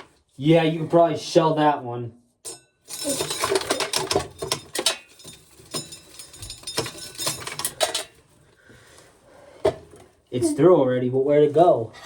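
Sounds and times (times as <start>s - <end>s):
corn sheller clatter: 2.9s - 8.3s.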